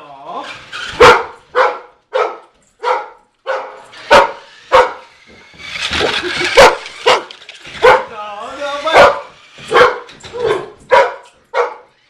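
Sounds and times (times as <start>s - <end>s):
dog barking: 0.9s - 5.1s, 6.0s - 8.2s, 8.8s - 11.9s.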